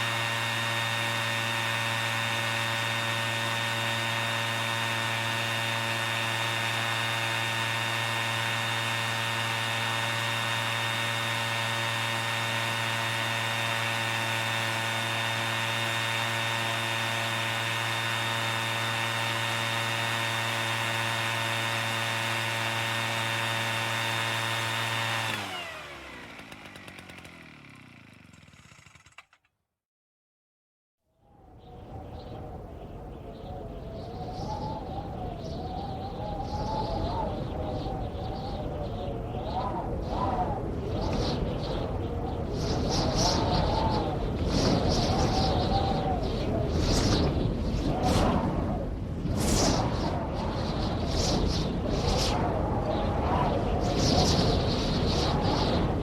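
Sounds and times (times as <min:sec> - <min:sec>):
machine motor running and winding down: 0:00.0 - 0:29.5.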